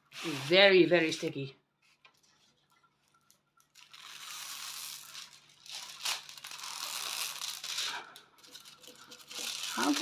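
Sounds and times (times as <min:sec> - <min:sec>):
plastic film crinkling: 0:03.1 - 0:10.0.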